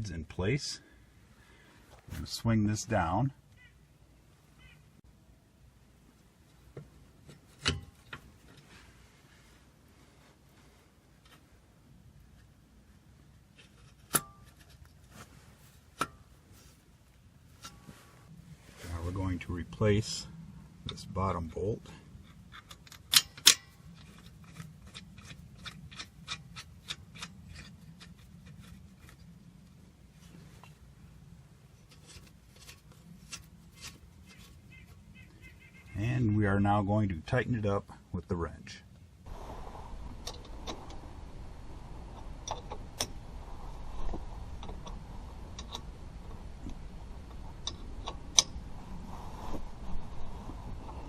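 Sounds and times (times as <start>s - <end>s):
light metallic clicks of bolt: 22.2s - 28.7s
sharp metal click: 22.3s - 28.7s.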